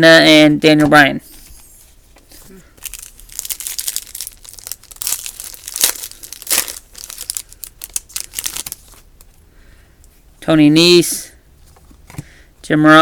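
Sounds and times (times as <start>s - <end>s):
card pack wrapper crinkling: 2.8s - 9.1s.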